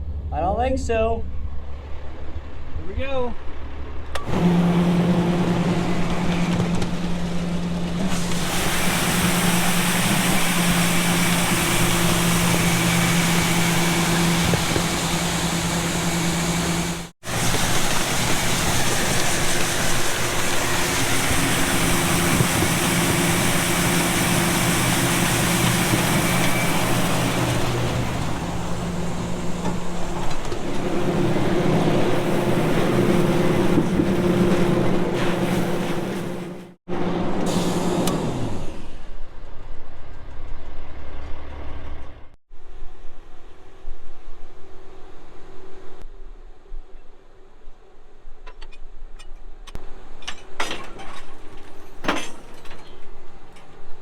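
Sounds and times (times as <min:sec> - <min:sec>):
truck engine running: 0:04.2 - 0:39.4
loud rushing hiss: 0:08.1 - 0:33.8.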